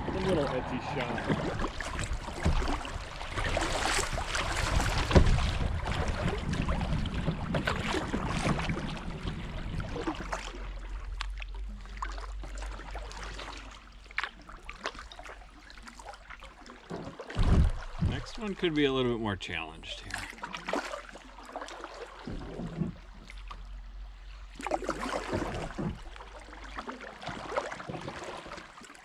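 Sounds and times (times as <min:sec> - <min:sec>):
moving river water: 0:00.0 - 0:29.0
paddle splashes: 0:00.0 - 0:29.0
paddle knocking against kayak hull: 0:01.3 - 0:08.7.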